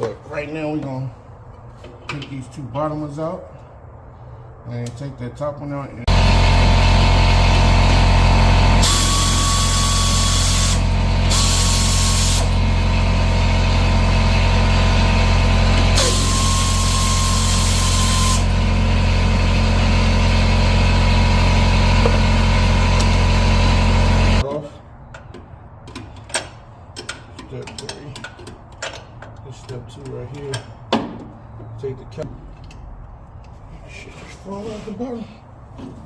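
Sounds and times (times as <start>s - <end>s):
power tool running: 6.1s - 24.4s.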